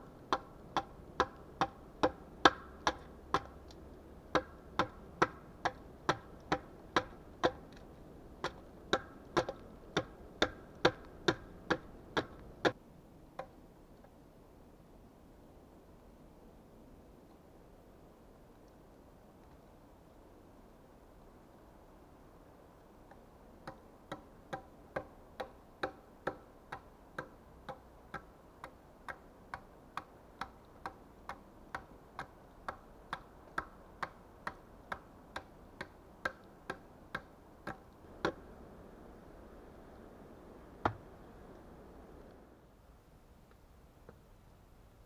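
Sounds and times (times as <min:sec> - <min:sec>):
hand tool knocking on wood: 0:00.3 - 0:03.6, 0:04.3 - 0:07.8, 0:08.4 - 0:12.8.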